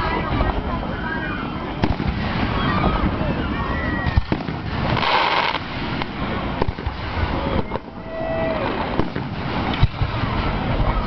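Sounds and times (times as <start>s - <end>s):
crackling hiss of fireworks: 0.0s - 11.0s
falling whistle of firework: 1.8s - 5.7s
fireworks bangs: 1.8s - 11.0s.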